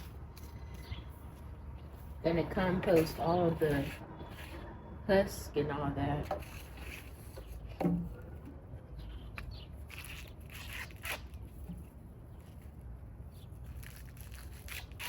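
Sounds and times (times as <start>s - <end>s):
low steady hum: 0.0s - 15.0s
corn husks tearing and rustling: 9.2s - 15.0s.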